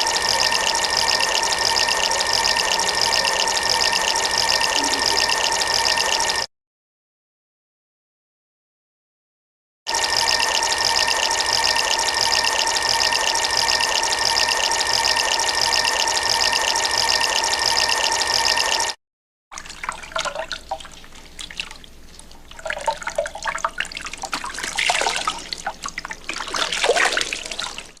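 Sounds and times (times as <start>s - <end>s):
water splashing and sloshing: 19.6s - 27.9s.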